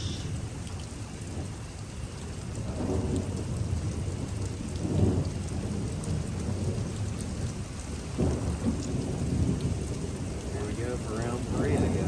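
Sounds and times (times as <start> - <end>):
steady rain: 0.0 - 12.0
thunder rumbling: 2.4 - 12.0.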